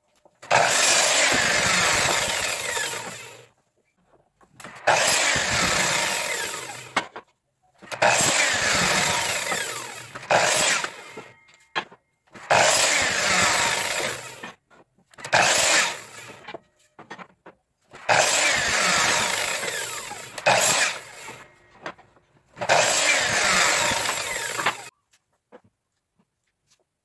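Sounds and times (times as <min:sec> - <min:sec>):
electric power tool cutting wood: 0:00.4 - 0:03.5, 0:04.6 - 0:07.0, 0:07.8 - 0:14.6, 0:15.2 - 0:16.6, 0:18.0 - 0:22.0, 0:22.6 - 0:24.9.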